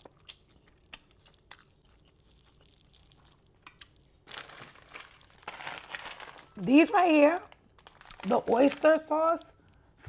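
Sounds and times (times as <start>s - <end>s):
person chewing noodles: 0.0s - 4.3s.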